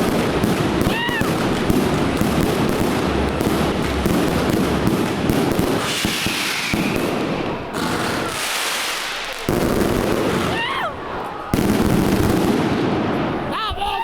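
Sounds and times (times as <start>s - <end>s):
firework pops and bangs: 0.0s - 10.6s
firework hissing whistle: 5.8s - 7.2s.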